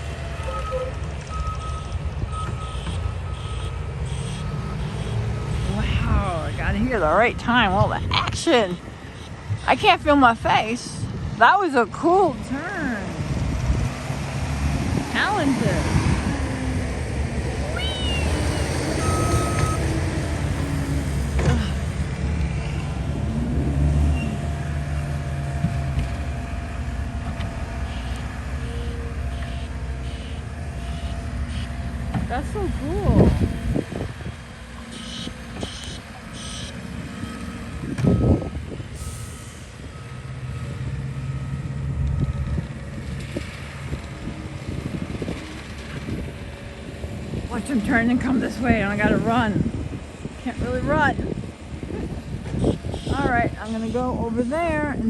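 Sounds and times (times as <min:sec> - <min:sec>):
truck backup alarm beeping: 0:00.0 - 0:11.2, 0:17.6 - 0:22.2, 0:27.4 - 0:50.4, 0:51.1 - 0:54.8
truck engine rumble: 0:00.0 - 0:55.0
high squeals: 0:17.6 - 0:21.4.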